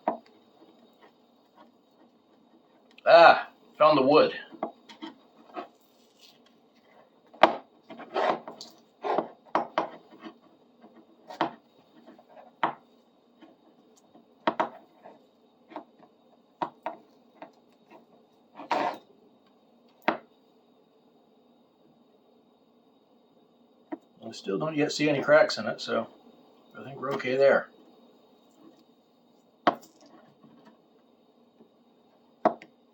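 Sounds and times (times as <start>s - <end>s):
tape scraping on wooden handle: 7.9s - 12.6s, 18.6s - 19.0s.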